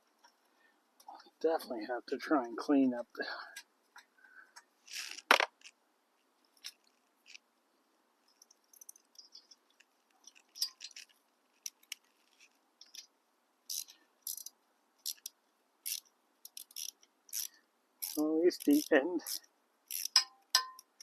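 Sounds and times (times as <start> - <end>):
light clicks taps and scrapes: 8.3 - 13.1
metal tools knock: 20.2 - 20.8.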